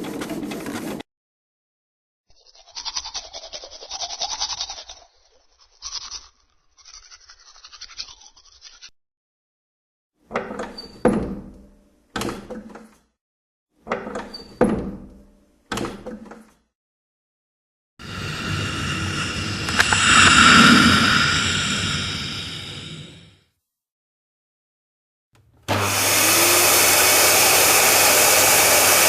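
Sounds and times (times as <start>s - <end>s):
brush scrubbing: 0.0s - 1.0s.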